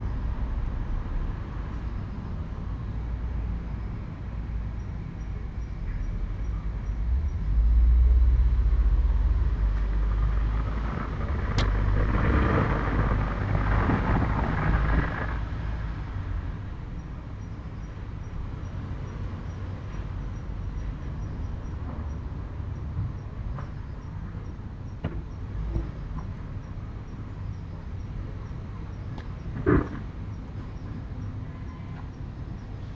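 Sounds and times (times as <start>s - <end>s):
steady low rumble: 0.0s - 32.9s
rushing noise: 7.1s - 16.8s.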